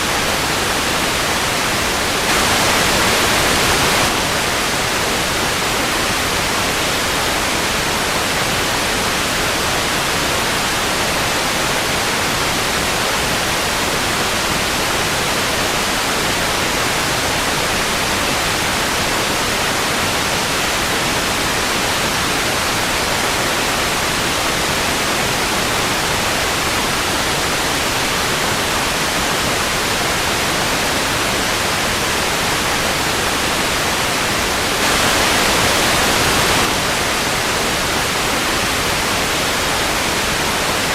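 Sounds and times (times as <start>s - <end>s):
tv static hiss: 0.0s - 14.6s, 32.2s - 40.9s.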